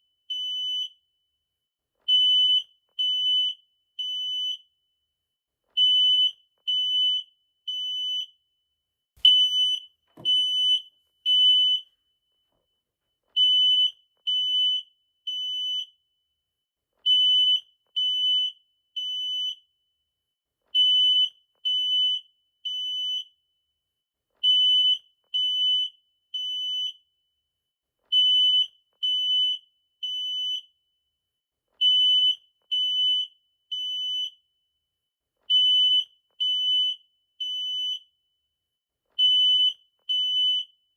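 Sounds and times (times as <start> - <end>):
smoke alarm beeping: 0.1 - 1.0, 2.1 - 4.7, 5.8 - 8.4, 9.2 - 12.3, 13.4 - 16.0, 17.1 - 19.7, 24.5 - 27.0, 28.2 - 30.7, 31.8 - 34.5, 35.5 - 38.1.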